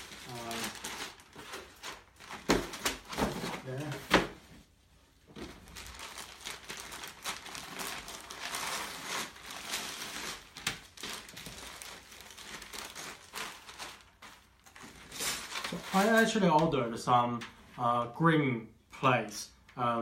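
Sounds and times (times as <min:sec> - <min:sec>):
packaging crinkling and rustling: 0:00.0 - 0:04.4, 0:05.3 - 0:16.8.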